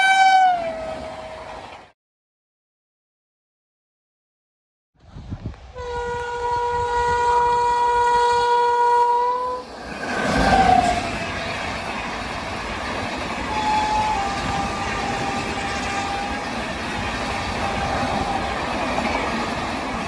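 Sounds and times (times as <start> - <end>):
locomotive horn blast: 0.0 - 1.5, 5.8 - 9.7, 13.4 - 16.6, 17.4 - 18.6
train rushing past: 5.8 - 20.0
wheels rattling on rails: 9.6 - 20.0.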